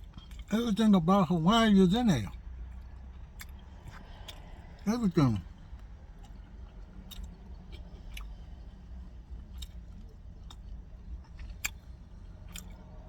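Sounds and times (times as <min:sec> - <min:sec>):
person chewing food: 0:00.0 - 0:00.5, 0:02.3 - 0:13.0
wet mouth clicks and smacks: 0:05.8 - 0:08.4, 0:09.5 - 0:12.9.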